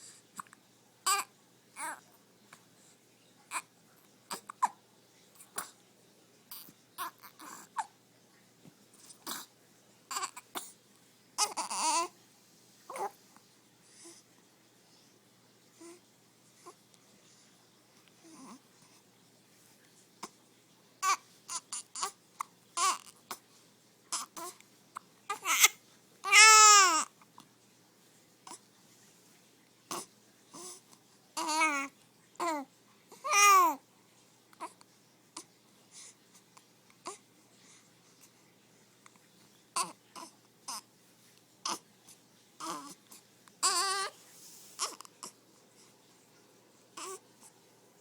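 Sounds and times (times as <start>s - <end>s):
baby crying: 1.0s - 2.0s, 6.5s - 7.9s, 10.1s - 10.6s, 11.4s - 12.1s, 21.0s - 22.2s, 22.8s - 23.1s, 25.3s - 27.1s, 31.4s - 32.6s, 33.2s - 33.8s, 42.6s - 43.0s, 43.6s - 44.1s, 47.0s - 47.2s
baby hiccuping: 9.2s - 9.5s.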